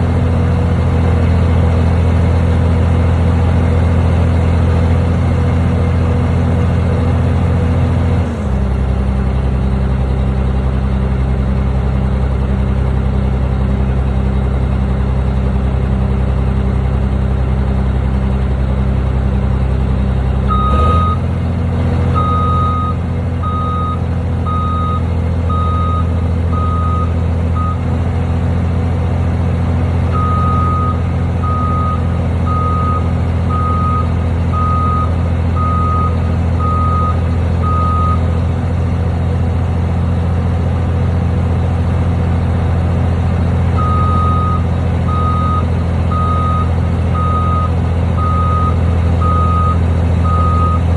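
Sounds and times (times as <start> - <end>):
heavy machine engine running: 0.0 - 50.9
reversing alarm beeping: 20.5 - 21.2, 22.2 - 27.8, 30.1 - 38.2, 43.8 - 50.9.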